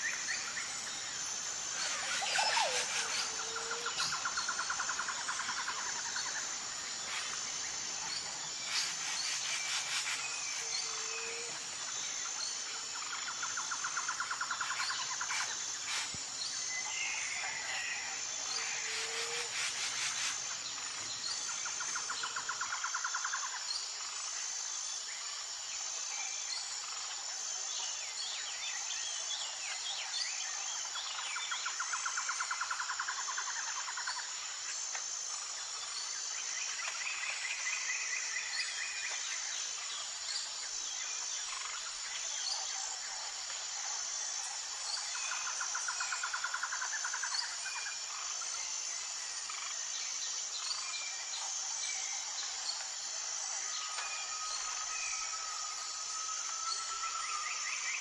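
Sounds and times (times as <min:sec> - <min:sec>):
high insect buzz: 0:00.0 - 0:25.8
pulsed insect trill: 0:00.0 - 0:26.0, 0:28.9 - 0:58.0.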